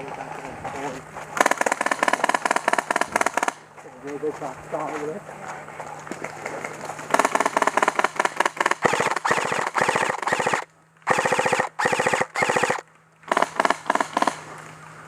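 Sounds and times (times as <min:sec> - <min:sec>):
airsoft rifle bursts: 0:01.4 - 0:03.6, 0:07.1 - 0:14.5
airsoft rifle single shots: 0:07.1 - 0:14.4.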